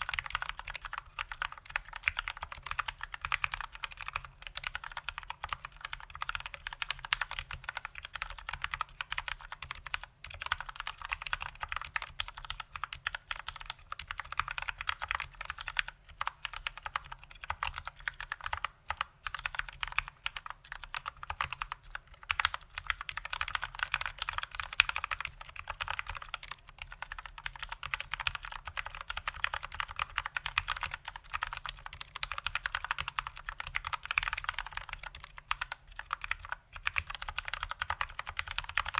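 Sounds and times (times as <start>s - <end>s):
mechanical keyboard typing: 0.0s - 38.9s.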